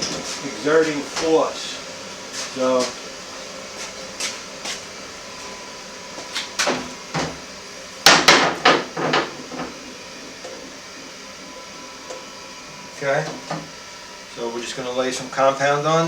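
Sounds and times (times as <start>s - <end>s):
metal tools knocking on workbench: 8.1s - 9.8s.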